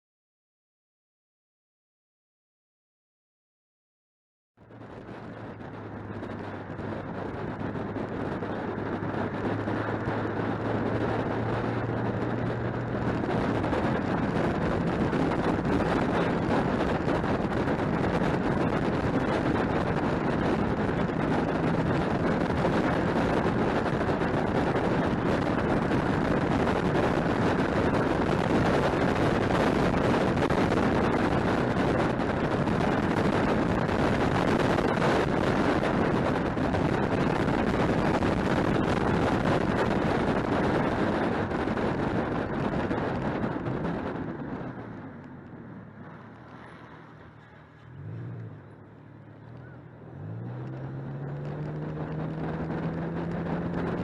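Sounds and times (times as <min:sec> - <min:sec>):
car engine: 0:04.6 - 0:54.0
wind and tyre noise: 0:04.6 - 0:54.0.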